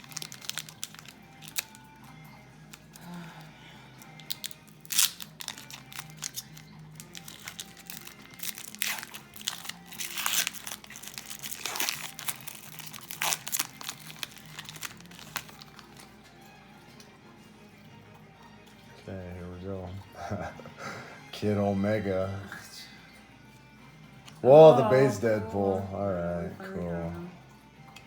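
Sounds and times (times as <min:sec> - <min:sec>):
wrapper crinkling and tearing: 0:00.0 - 0:02.0, 0:02.7 - 0:03.2, 0:04.0 - 0:16.2
background music: 0:00.0 - 0:28.0.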